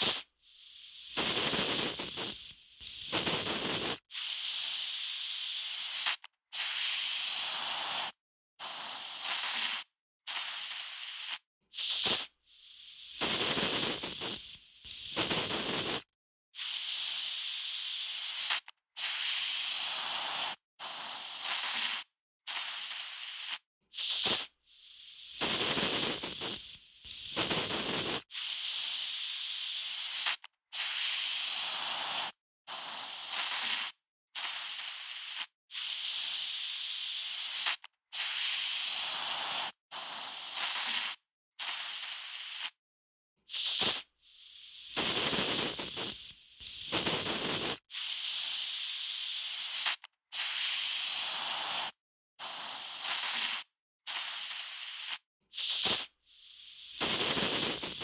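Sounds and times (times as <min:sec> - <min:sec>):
aerosol spray can hissing: 0:00.0 - 0:42.8, 0:43.5 - 0:58.0.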